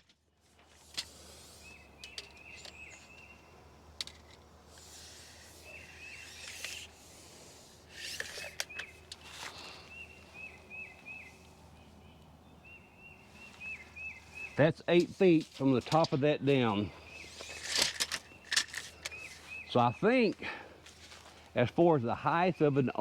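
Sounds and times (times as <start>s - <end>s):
handling clicks and rustling: 0.0s - 12.4s, 13.4s - 21.8s
songbird singing: 0.7s - 23.0s.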